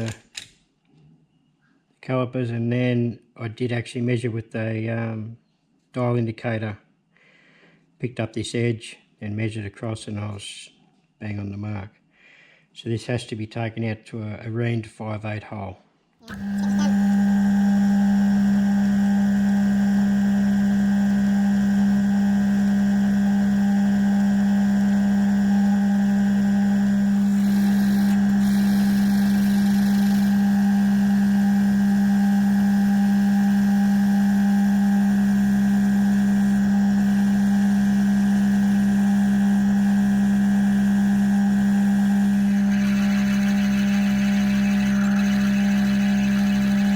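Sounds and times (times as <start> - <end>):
mill-drill humming: 16.3 - 46.9.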